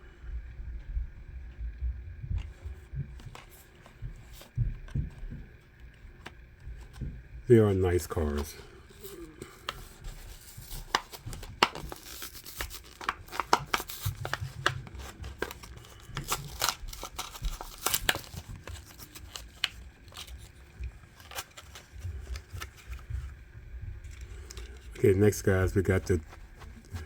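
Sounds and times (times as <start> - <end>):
plastic packaging clicks and snaps: 9.1 - 23.0.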